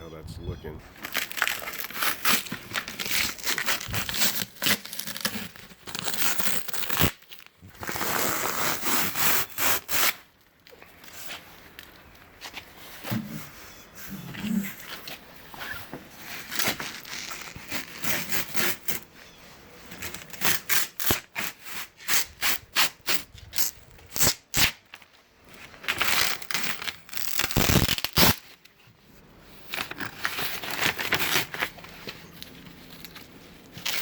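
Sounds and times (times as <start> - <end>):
fabric tearing and crackling: 0.9 - 10.4, 16.4 - 19.0, 20.0 - 25.1, 25.8 - 28.7.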